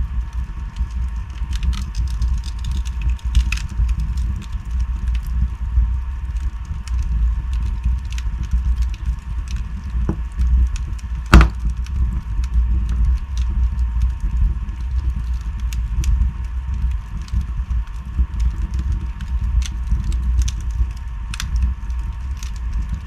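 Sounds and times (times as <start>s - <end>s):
burning logs crackling: 0.0s - 23.0s
flames rumbling in fireplace: 0.0s - 23.0s
loud pop of fire: 11.2s - 11.8s.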